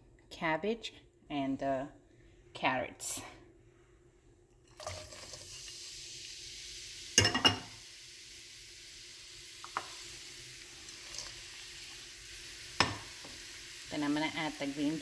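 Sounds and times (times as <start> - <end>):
vegetables sizzling in oil: 4.7 - 15.0.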